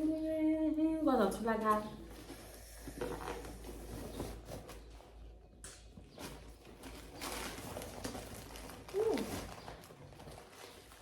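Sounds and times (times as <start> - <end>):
packaging rustling and clicking: 6.0 - 11.0.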